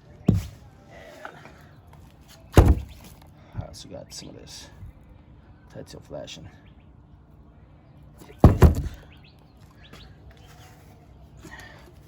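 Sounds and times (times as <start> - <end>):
heavy knocks on hard surface: 2.6 - 2.9, 8.4 - 9.0.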